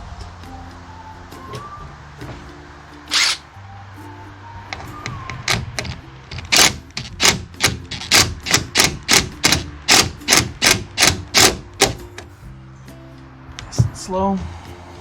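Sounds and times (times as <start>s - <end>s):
faint background music: 0.0s - 15.0s
tool clicking: 3.1s - 3.4s, 4.8s - 12.3s.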